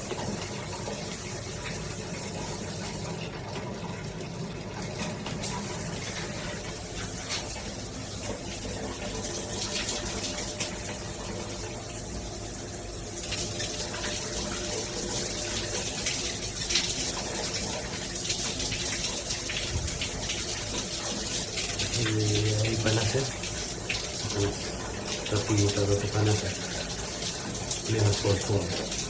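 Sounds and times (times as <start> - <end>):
water running and splashing: 0.0 - 29.0.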